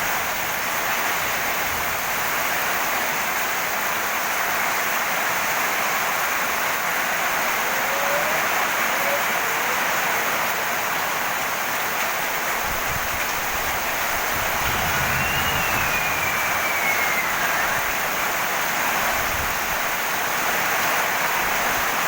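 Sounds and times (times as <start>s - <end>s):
rain falling on garden: 0.0s - 22.0s
faint gliding tone: 13.9s - 19.2s.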